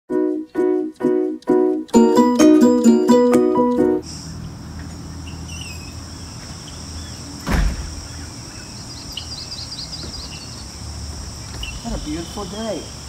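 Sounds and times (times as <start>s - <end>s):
ukulele music: 0.1s - 4.0s
crickets chirping: 4.0s - 13.0s
thump: 7.4s - 8.0s.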